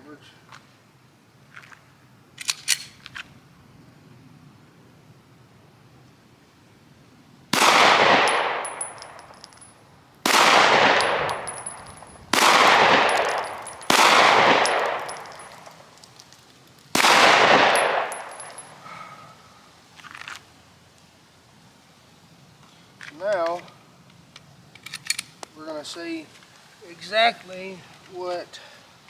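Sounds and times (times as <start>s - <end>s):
pistol shots with echo: 7.6s - 9.4s, 10.3s - 15.8s, 17.0s - 18.8s.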